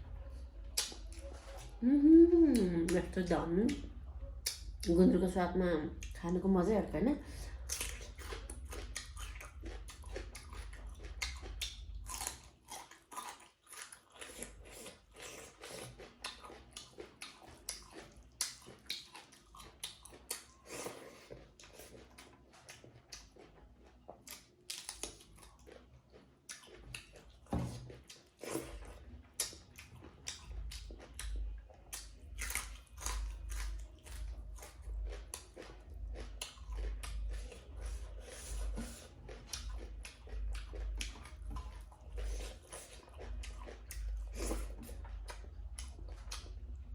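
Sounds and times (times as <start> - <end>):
dull low rumble: 0.0 - 12.1, 30.3 - 46.9
person biting and chewing food: 0.6 - 1.8, 7.5 - 46.8
wet mouth clicks and crunches: 7.7 - 21.2, 24.2 - 25.7, 36.2 - 37.8.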